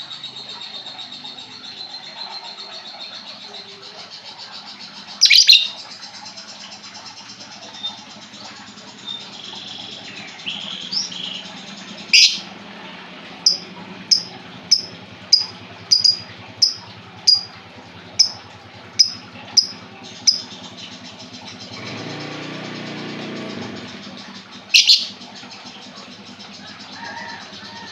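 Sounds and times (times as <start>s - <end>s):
lovebird screeching and chirping: 5.2s - 5.8s, 12.1s - 12.5s, 13.4s - 17.5s, 18.2s - 18.4s, 19.0s - 20.5s, 24.7s - 25.2s.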